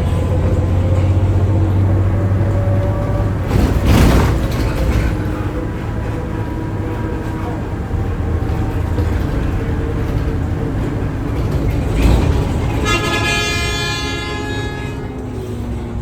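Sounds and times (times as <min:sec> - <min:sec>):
bus engine rumbling: 0:00.0 - 0:16.0
vehicle horn: 0:12.6 - 0:15.3.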